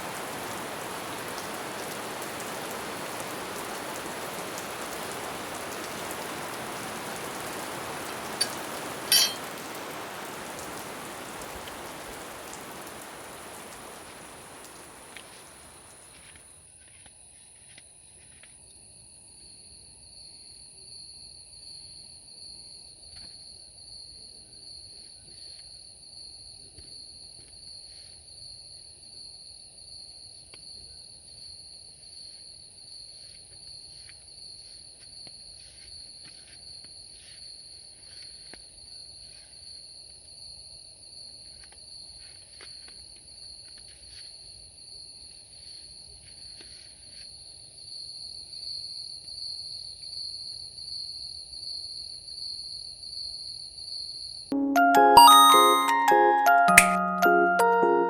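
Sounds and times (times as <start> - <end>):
crickets trilling: 0.0 - 16.1.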